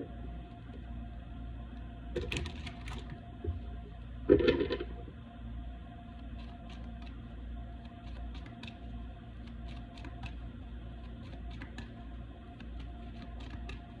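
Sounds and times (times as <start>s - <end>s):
steady low hum: 0.0s - 14.0s
cards clicking and flicking: 11.1s - 12.0s.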